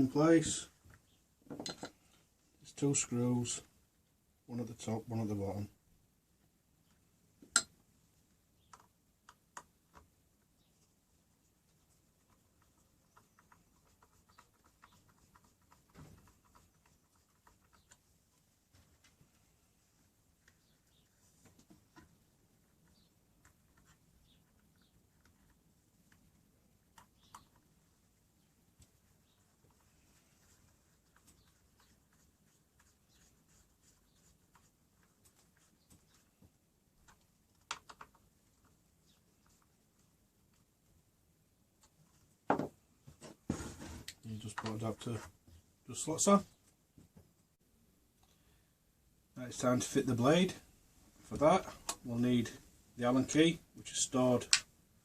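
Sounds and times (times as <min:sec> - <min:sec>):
faint clicks and taps of hand work: 0:08.6 - 0:10.5, 0:20.4 - 0:27.8, 0:28.7 - 0:40.7
soft knock: 0:42.5 - 0:42.7.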